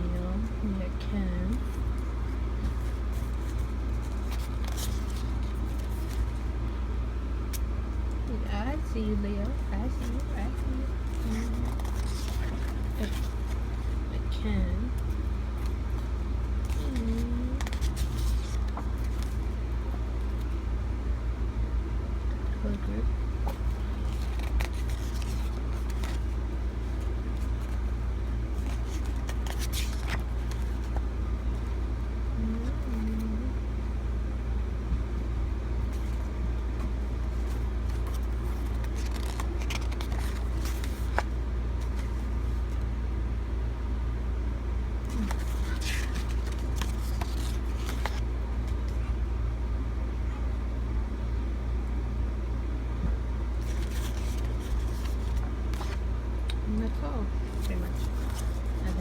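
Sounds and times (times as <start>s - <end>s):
steady low rumble: 0.0s - 59.0s
paper and plastic rustling: 1.5s - 6.5s, 9.5s - 14.1s, 15.0s - 20.6s, 23.4s - 31.7s, 35.8s - 42.8s, 45.0s - 49.1s, 53.5s - 56.0s, 57.4s - 59.0s
person humming: 32.4s - 33.6s.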